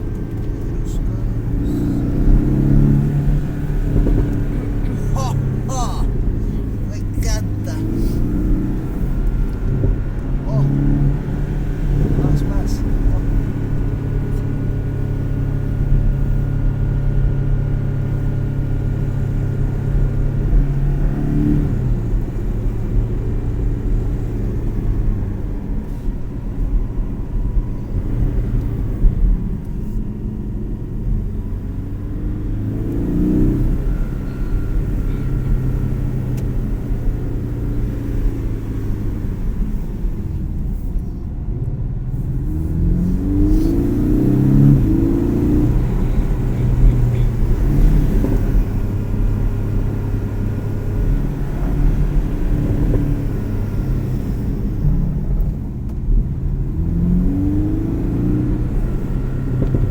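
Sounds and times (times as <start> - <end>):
car engine running under load: 0.0 - 59.9.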